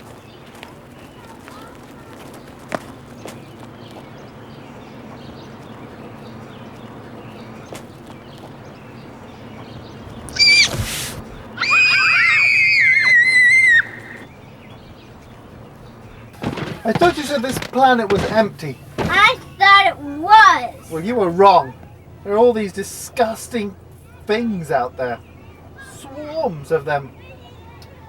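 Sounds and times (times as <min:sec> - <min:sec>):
low background hum: 0:00.0 - 0:28.0
high-pitched screaming: 0:10.3 - 0:14.2.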